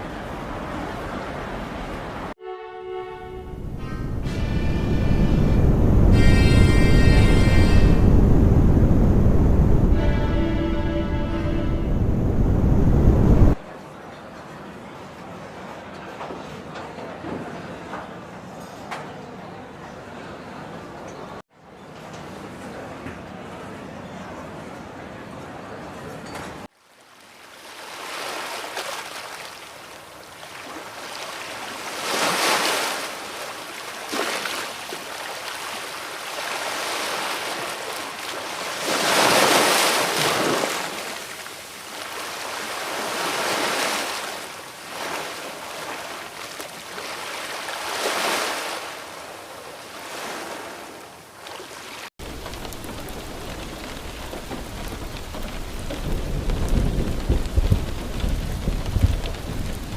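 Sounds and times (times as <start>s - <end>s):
heavy rain: 3.3s - 13.6s, 31.0s - 46.2s, 52.2s - 59.9s
rushing noise in surges: 3.4s - 13.6s
low rumble: 7.2s - 13.6s.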